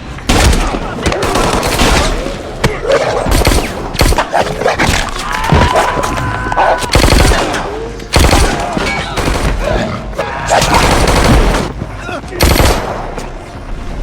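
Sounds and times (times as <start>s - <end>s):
rapid gunfire bursts: 0.3s - 2.2s, 3.2s - 4.3s, 6.9s - 9.7s, 10.6s - 11.8s, 12.4s - 13.1s.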